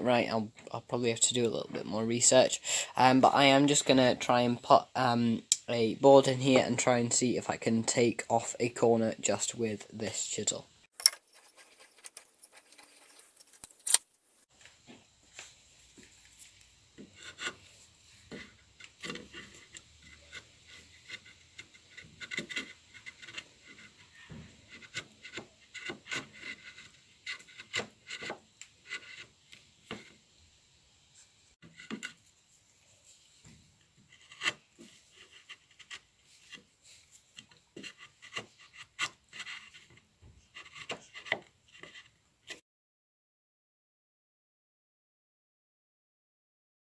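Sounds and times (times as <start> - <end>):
chisel scraping through wood: 11.0 - 14.0, 17.0 - 29.3, 34.1 - 40.0, 40.6 - 42.1.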